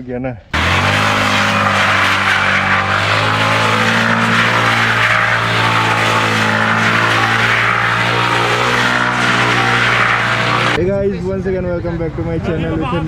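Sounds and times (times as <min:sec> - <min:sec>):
motorcycle engine at high revs: 0:00.6 - 0:10.8.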